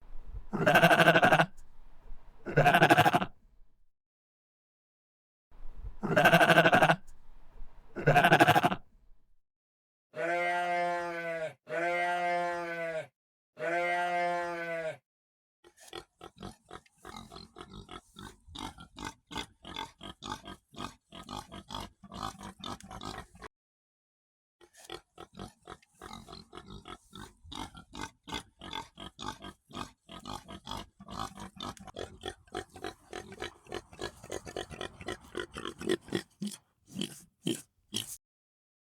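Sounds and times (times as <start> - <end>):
pig grunts: 0.5 - 1.6, 2.4 - 3.3, 6.0 - 7.1, 7.9 - 8.8, 15.8 - 23.5, 24.7 - 38.2
pitched animal call: 0.5 - 1.6, 2.4 - 3.3, 6.0 - 7.2, 8.0 - 8.8, 31.6 - 38.2
animal loud cries: 0.6 - 1.6, 2.5 - 3.3, 6.0 - 7.1, 8.0 - 8.8.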